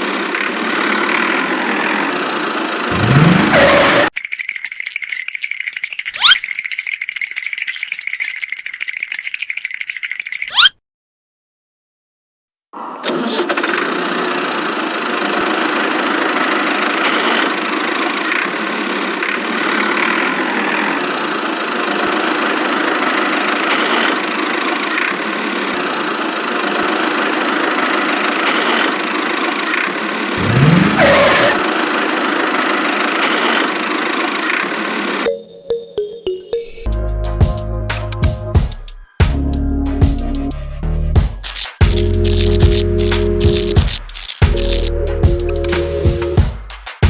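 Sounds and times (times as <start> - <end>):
small motor whirring: 41.4 - 44.9.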